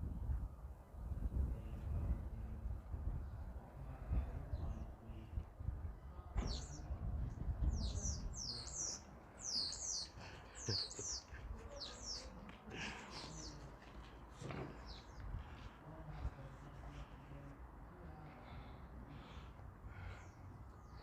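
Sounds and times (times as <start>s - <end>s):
birds chirping: 6.2s - 21.0s.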